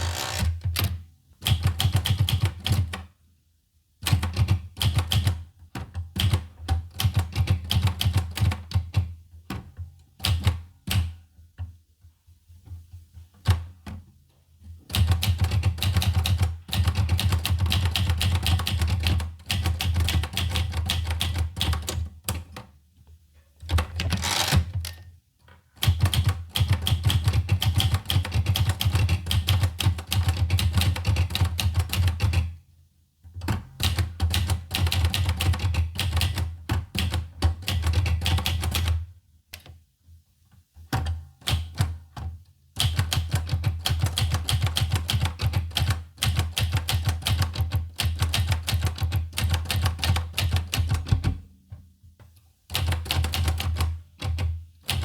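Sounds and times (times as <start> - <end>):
typewriter keystrokes clacking: 25.8 - 32.5, 42.8 - 51.4, 52.7 - 55.0.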